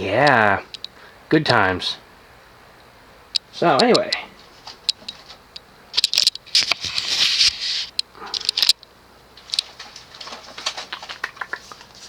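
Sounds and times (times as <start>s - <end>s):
handling rustling and scraping: 6.0s - 8.8s, 9.4s - 12.0s
small sharp clicks: 7.9s - 9.8s, 10.6s - 12.0s.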